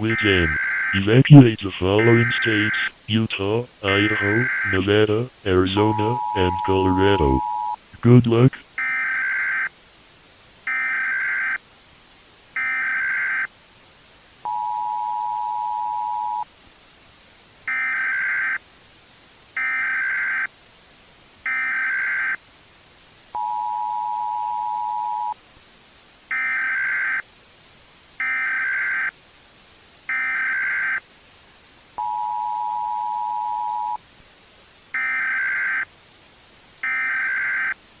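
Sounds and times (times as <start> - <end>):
digital data bursts: 0.0 - 9.7
two-tone attention signal: 2.0 - 2.8, 5.5 - 7.8, 14.5 - 16.4, 23.4 - 25.4, 32.0 - 34.0.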